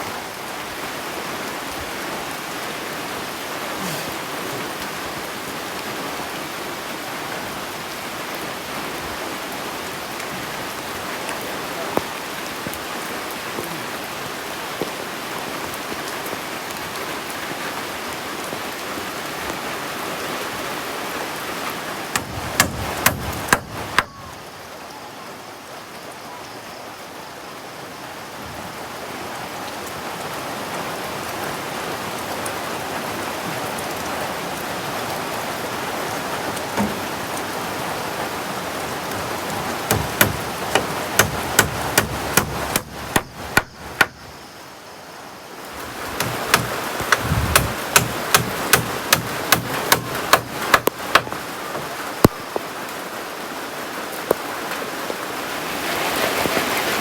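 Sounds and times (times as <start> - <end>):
heavy rain falling: 0.0 - 57.0
sharp knocks: 22.2 - 24.2, 36.8 - 37.2, 39.9 - 44.3, 45.8 - 51.8.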